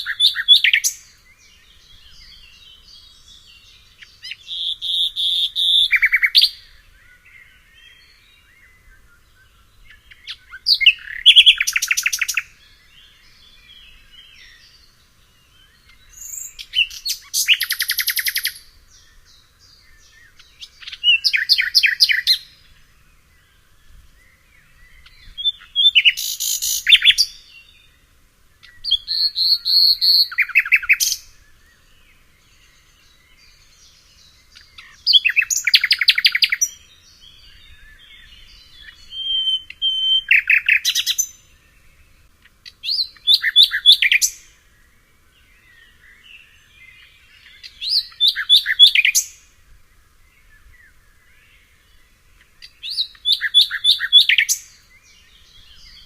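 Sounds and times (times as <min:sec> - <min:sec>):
faint bird chirps: 0:00.0 - 0:56.0
songbird trilling high notes: 0:04.1 - 0:06.7, 0:25.0 - 0:27.4, 0:37.9 - 0:41.4.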